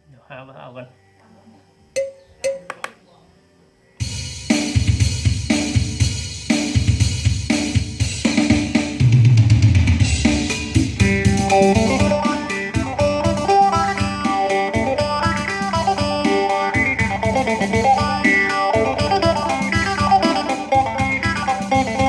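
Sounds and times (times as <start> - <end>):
drum kit backing track: 2.0 - 3.0, 4.0 - 22.0
clicks: 2.0 - 3.1.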